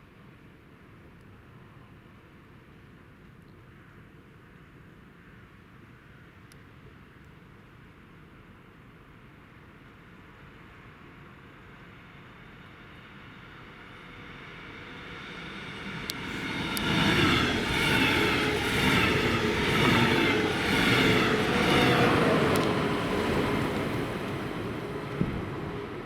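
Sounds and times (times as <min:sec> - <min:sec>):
electric train passing: 0:10.9 - 0:26.0.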